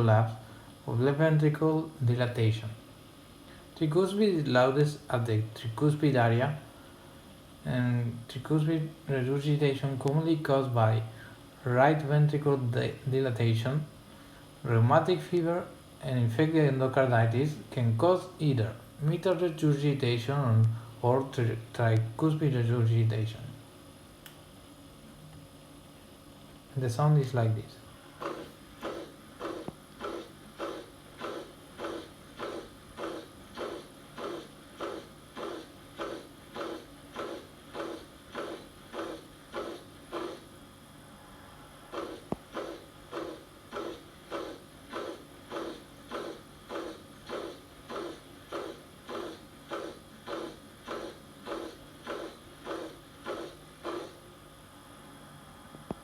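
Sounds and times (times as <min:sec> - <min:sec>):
blowing heart murmur: 0:28.2 - 0:40.5.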